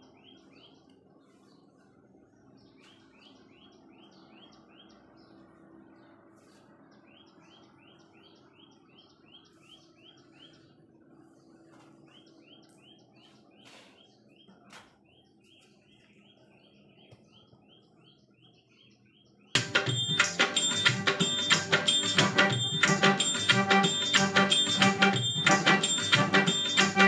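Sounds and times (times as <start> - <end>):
bird chirping: 2.4 - 10.8, 11.6 - 27.0
loud music: 19.6 - 27.0.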